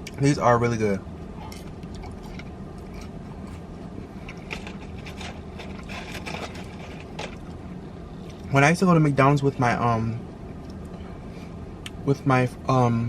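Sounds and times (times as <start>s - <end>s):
low rumble inside a car: 0.0s - 13.0s
person chewing crunchy food: 1.3s - 8.5s.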